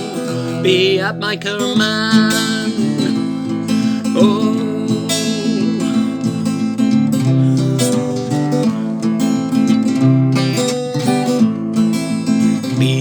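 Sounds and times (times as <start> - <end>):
acoustic guitar chords: 0.0 - 13.0.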